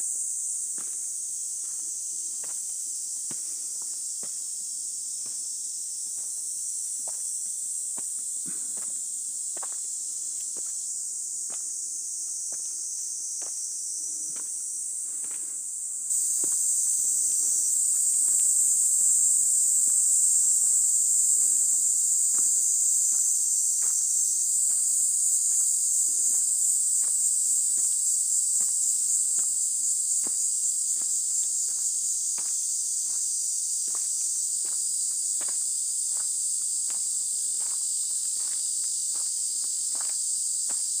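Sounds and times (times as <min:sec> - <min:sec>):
cicadas buzzing: 0:00.0 - 0:41.0
footsteps walking: 0:16.1 - 0:28.0, 0:28.6 - 0:29.6, 0:33.9 - 0:34.8, 0:35.4 - 0:40.9.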